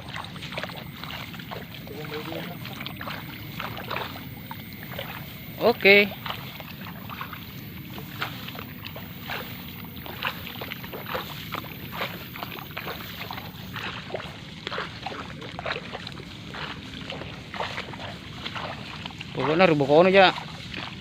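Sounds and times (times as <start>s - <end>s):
wading through shallow water: 0.0s - 21.0s.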